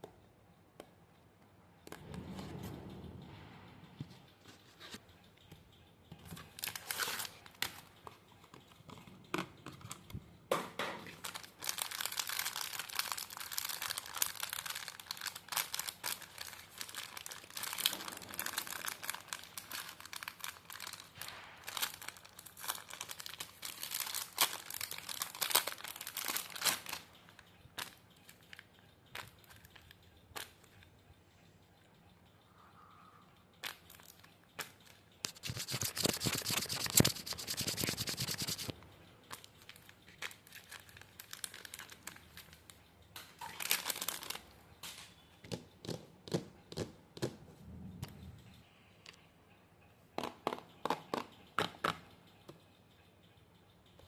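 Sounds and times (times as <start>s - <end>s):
paper crinkling and tearing: 35.3s - 38.7s.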